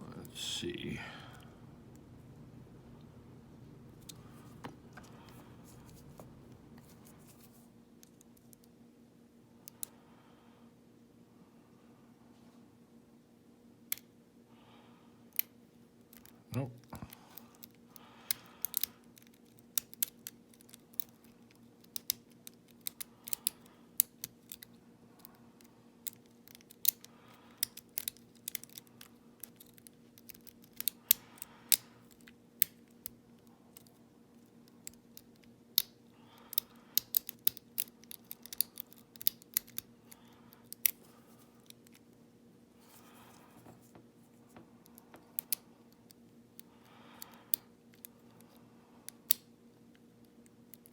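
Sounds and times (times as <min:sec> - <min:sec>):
low hum: 0:01.0 - 0:07.4.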